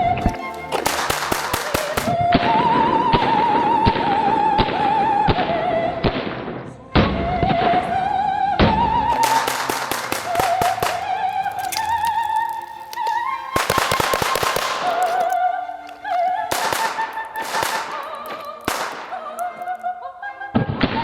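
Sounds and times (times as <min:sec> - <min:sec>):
operatic soprano singing: 0:00.0 - 0:21.0
pistol shots: 0:00.3 - 0:02.2, 0:09.1 - 0:19.8.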